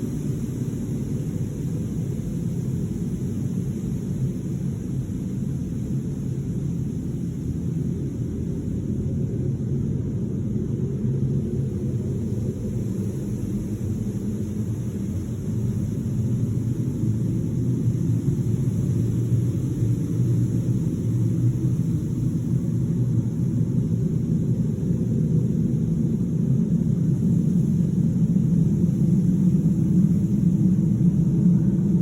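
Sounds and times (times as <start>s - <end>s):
steady low rumble: 0.0s - 32.0s.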